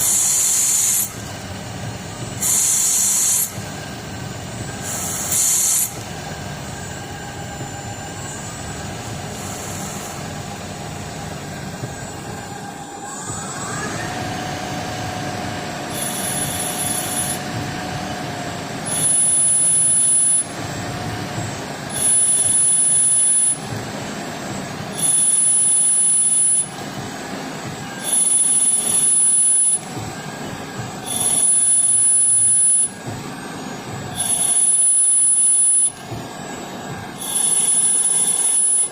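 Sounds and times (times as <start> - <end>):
high-pitched whine: 0.0 - 38.9
lathe running: 0.0 - 38.9
rising machine tone: 10.3 - 20.7.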